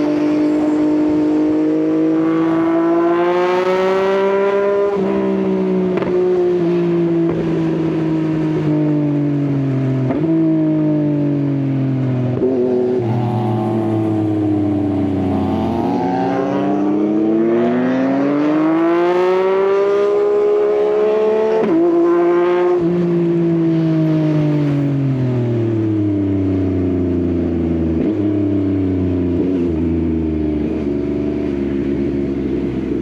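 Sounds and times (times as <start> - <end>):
motorcycle engine while riding: 0.0 - 33.0
gear changes: 13.0 - 17.0.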